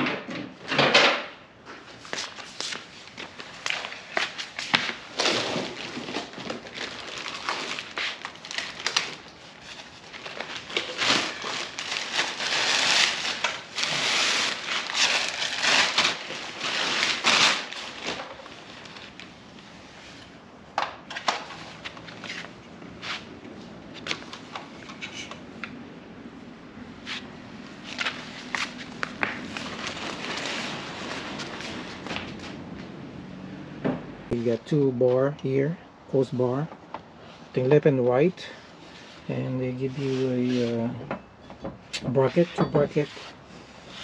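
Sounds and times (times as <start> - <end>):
packaging crinkling and rustling: 2.0 - 19.4, 27.6 - 32.6.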